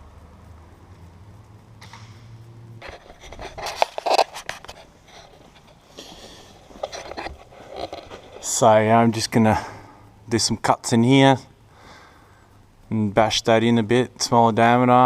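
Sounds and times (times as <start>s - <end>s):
steady low hum: 0.0s - 15.0s
knocks and scraping of parts: 1.8s - 8.8s.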